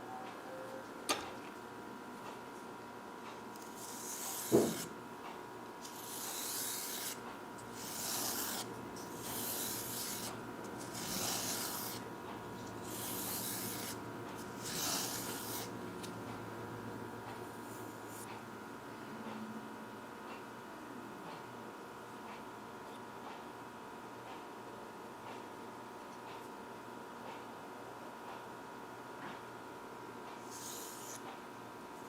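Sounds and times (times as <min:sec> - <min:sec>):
hand rubbing pocket knife: 0:05.8 - 0:15.7, 0:30.5 - 0:31.2.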